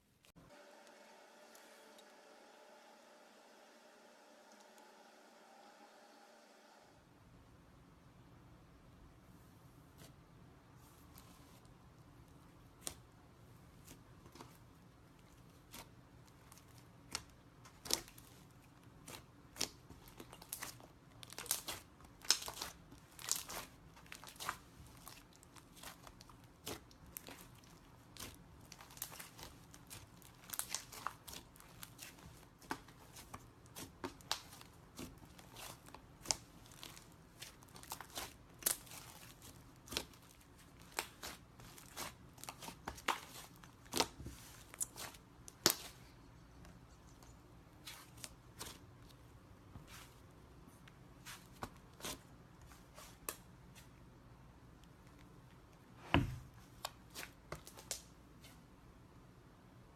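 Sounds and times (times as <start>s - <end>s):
slime clay crackling and popping: 13.8s - 46.2s, 56.7s - 58.1s.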